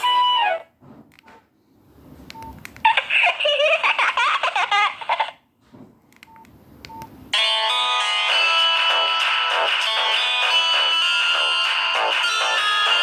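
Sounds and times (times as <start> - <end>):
musical ringtone: 7.4 - 13.0.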